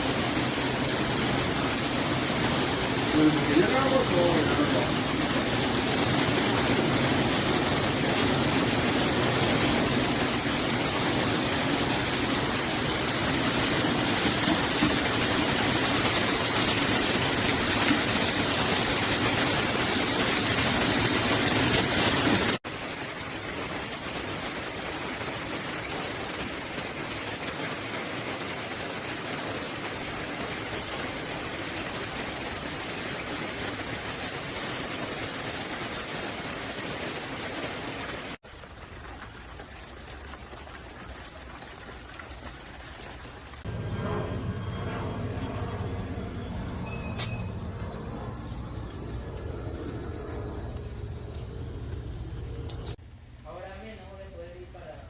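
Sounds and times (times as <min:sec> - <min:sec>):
rainwater pouring down rain chain: 0:00.0 - 0:43.7
rain rushing: 0:00.0 - 0:53.0.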